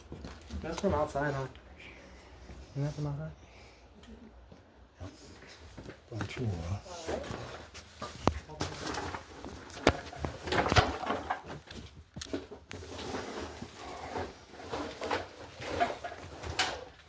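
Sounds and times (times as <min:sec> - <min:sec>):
sharp knocks and clatter: 0:08.1 - 0:12.6.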